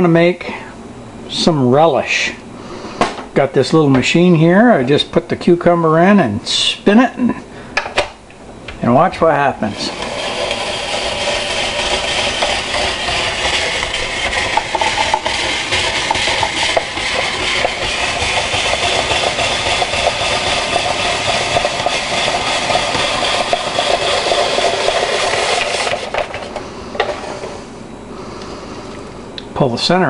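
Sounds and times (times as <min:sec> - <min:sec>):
spiral vegetable slicer turning: 0:09.7 - 0:27.4.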